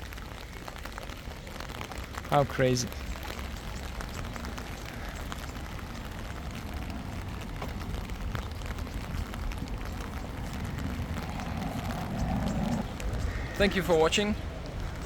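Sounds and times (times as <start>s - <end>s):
faint ticks and crackles: 0.0s - 15.0s
wind rumble on microphone: 3.0s - 15.0s.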